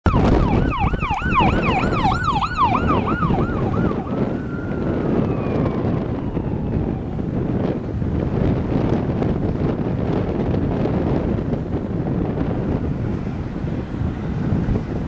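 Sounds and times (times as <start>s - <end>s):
emergency siren: 0.1s - 10.0s
wind rumble on microphone: 0.1s - 15.0s.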